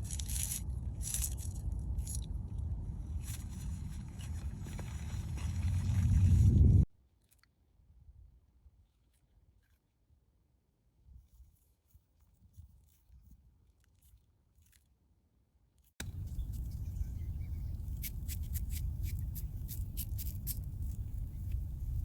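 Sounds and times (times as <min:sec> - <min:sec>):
low wind rumble on microphone: 0:00.0 - 0:06.9, 0:16.0 - 0:22.0.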